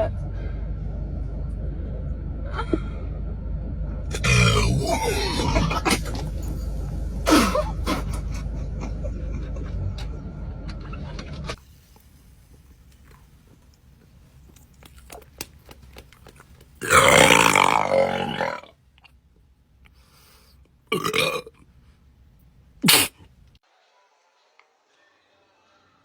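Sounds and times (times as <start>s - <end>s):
low background hum: 0.0s - 23.6s
person burping: 4.1s - 6.5s, 7.3s - 8.3s, 16.8s - 18.7s, 20.9s - 21.5s.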